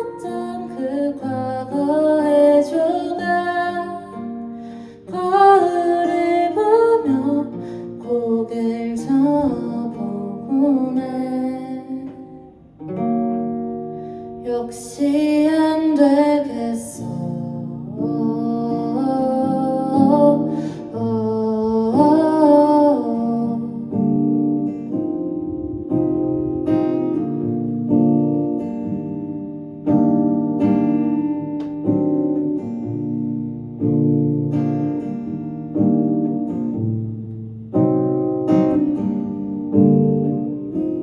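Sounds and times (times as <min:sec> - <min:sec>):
plucked acoustic guitar: 0:00.0 - 0:41.0
person singing: 0:14.5 - 0:24.0.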